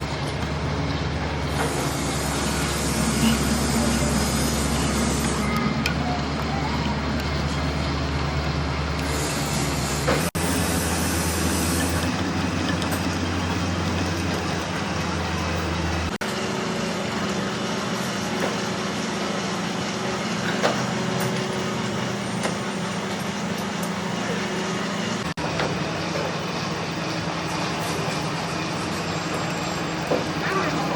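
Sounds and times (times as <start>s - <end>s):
metal lathe humming: 1.2s - 18.3s.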